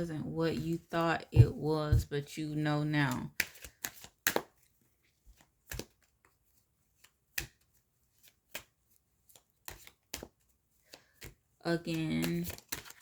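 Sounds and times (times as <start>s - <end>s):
cards being shuffled: 3.1s - 13.0s
sharp card snaps: 3.4s - 4.6s, 7.3s - 7.6s.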